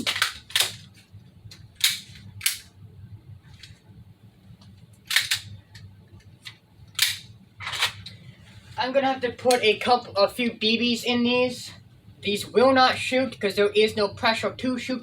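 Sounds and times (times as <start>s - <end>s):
plastic toy gun clicks: 1.8s - 2.7s, 5.1s - 5.5s.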